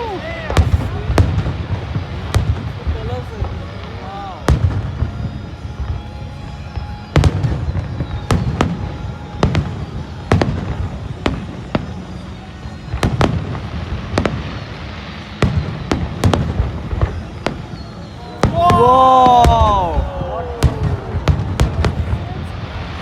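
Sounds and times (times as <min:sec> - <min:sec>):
fireworks bangs: 0:00.0 - 0:06.1, 0:12.9 - 0:23.0
steady crackling rumble: 0:00.0 - 0:18.5, 0:20.6 - 0:23.0.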